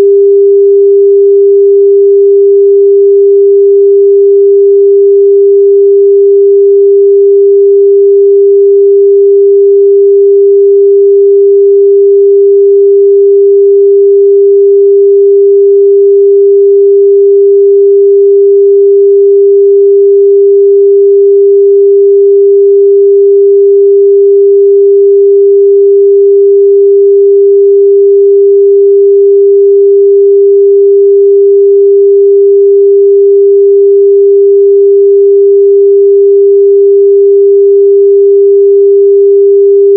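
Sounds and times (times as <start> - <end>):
steady electronic sine tone: 0.0 - 39.9.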